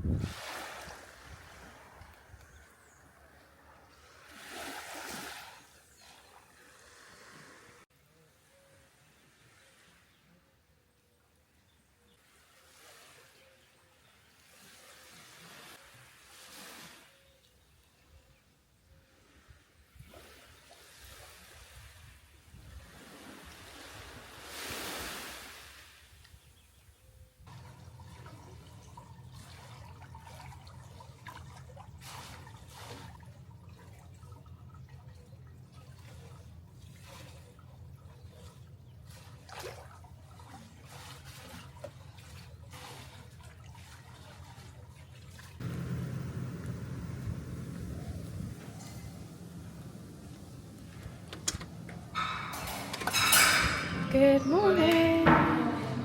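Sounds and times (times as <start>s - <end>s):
sea waves washing onto beach: 0.0s - 5.8s, 22.8s - 26.1s
water splashing and trickling: 0.0s - 7.9s, 27.4s - 56.0s
loud low rumble: 45.6s - 52.8s
steady low hum: 45.6s - 53.2s.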